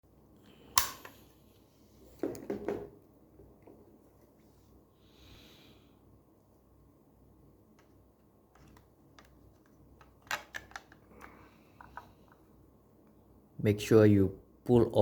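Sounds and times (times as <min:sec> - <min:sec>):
sharp click: 0:00.8 - 0:01.2.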